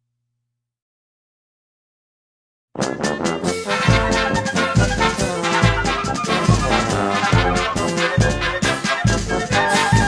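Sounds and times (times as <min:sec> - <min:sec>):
brass instrumental music: 0:02.8 - 0:10.0.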